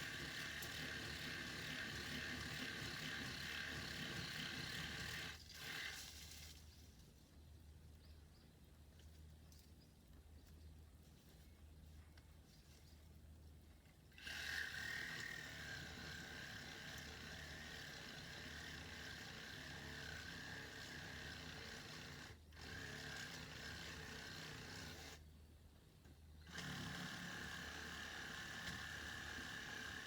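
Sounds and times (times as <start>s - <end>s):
chainsaw cutting wood: 0.0s - 6.4s, 14.2s - 25.2s, 26.4s - 30.0s.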